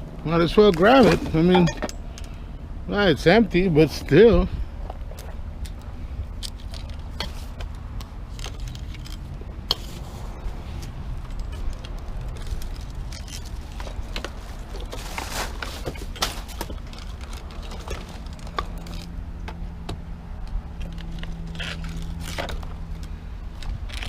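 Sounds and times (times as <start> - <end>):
steady low rumble: 0.0 - 24.0
scrap metal clattering and scraping: 0.6 - 2.0, 8.3 - 19.1.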